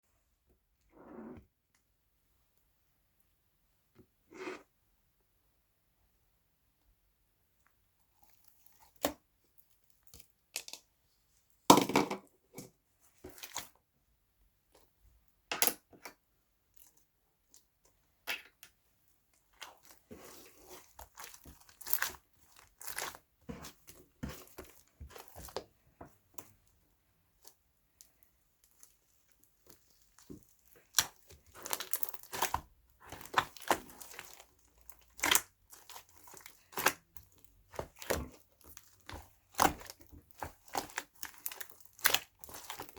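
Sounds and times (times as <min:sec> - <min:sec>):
crinkling handling noises: 0:19.3 - 0:42.9.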